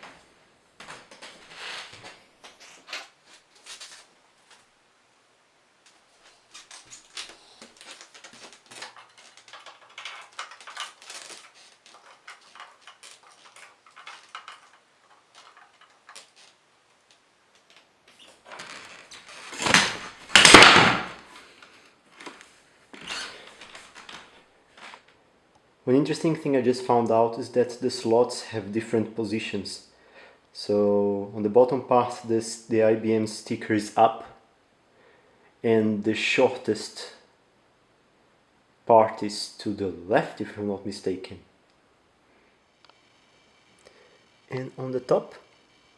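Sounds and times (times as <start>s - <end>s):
rustling scrapes: 1.2s - 4.7s, 5.9s - 16.6s
light clicks and rustles: 5.8s - 19.8s.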